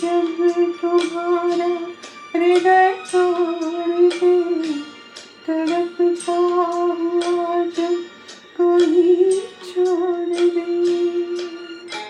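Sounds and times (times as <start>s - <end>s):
melody of long held notes: 0.0s - 12.0s.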